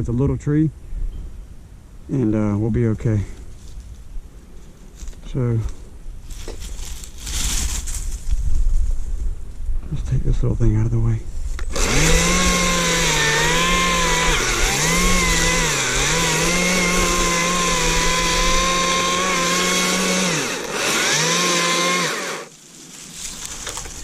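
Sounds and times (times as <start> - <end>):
battery chainsaw cutting tree: 11.6 - 22.6.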